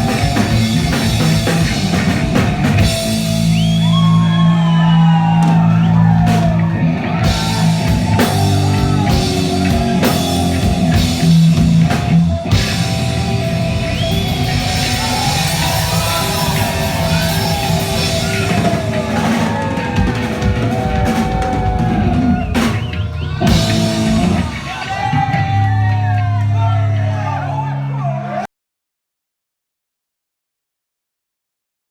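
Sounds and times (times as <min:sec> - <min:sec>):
drum kit hits: 0:00.0 - 0:04.3, 0:05.3 - 0:26.1
punk rock band playing: 0:00.0 - 0:27.9
low bass line: 0:00.0 - 0:28.2
electric guitar: 0:00.0 - 0:28.3.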